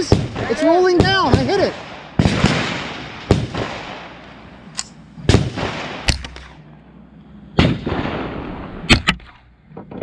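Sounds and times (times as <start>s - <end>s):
gunshots with echo: 0.0s - 4.2s, 5.3s - 6.4s.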